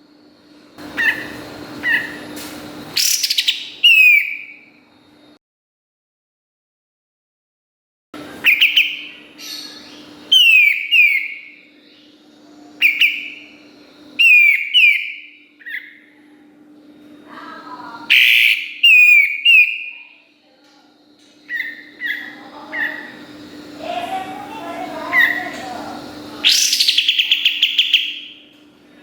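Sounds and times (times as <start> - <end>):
faint steady hum: 0.0 - 5.4, 8.2 - 29.0
bird singing whistles and chirps: 3.0 - 4.6, 8.4 - 12.2, 12.8 - 16.1, 18.1 - 20.1, 21.5 - 23.2, 26.4 - 28.5.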